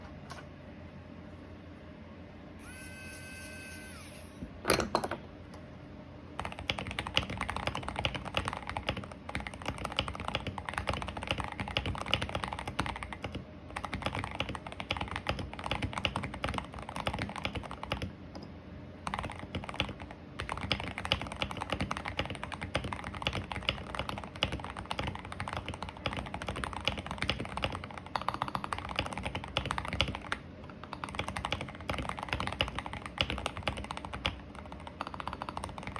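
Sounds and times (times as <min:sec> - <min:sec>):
short high tone: 0:02.6 - 0:04.4
mechanical keyboard typing: 0:06.4 - 0:18.2, 0:19.0 - 0:35.9.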